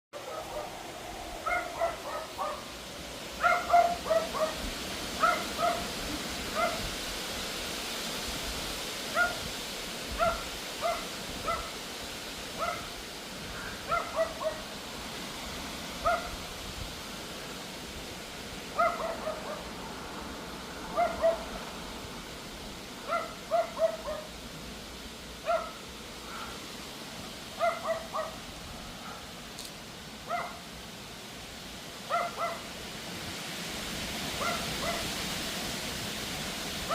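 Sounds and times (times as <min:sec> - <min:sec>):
small dog yapping: 0:01.4 - 0:02.6, 0:03.4 - 0:04.6, 0:05.2 - 0:05.9, 0:06.5 - 0:06.8, 0:09.1 - 0:09.4, 0:10.2 - 0:11.8, 0:12.6 - 0:12.9, 0:13.8 - 0:14.6, 0:16.0 - 0:16.3, 0:18.8 - 0:19.7, 0:21.0 - 0:21.4, 0:23.1 - 0:24.3, 0:25.5 - 0:25.8, 0:27.6 - 0:28.4, 0:30.3 - 0:30.6, 0:32.1 - 0:32.7, 0:34.4 - 0:35.1.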